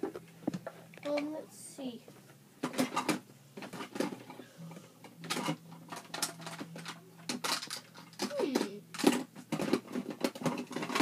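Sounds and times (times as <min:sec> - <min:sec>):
faint steady hum: 0:00.0 - 0:11.0
plastic tools clattering: 0:05.2 - 0:11.0.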